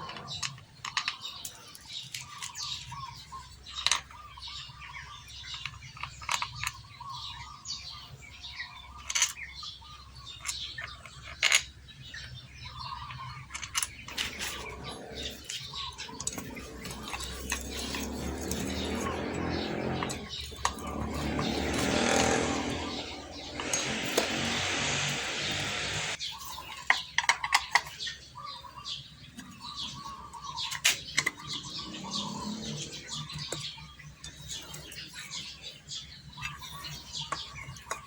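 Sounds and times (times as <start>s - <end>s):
birds chirping: 0.0s - 38.0s
passing vehicle engine: 16.1s - 26.2s.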